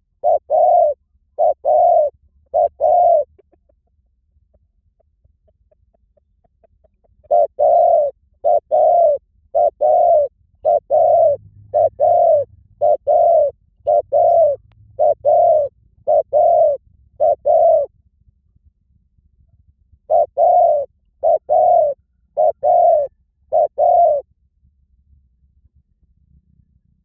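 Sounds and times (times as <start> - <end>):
dove cooing: 0.0 - 3.8, 6.6 - 17.9, 20.0 - 24.3.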